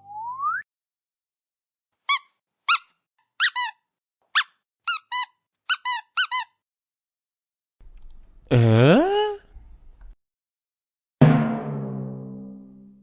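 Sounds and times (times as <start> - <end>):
comic high squeaks: 2.1 - 3.8.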